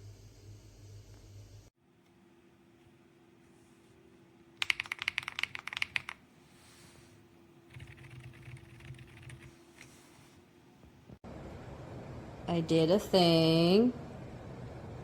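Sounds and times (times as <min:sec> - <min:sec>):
mechanical keyboard typing: 0:04.6 - 0:06.2, 0:07.7 - 0:09.9.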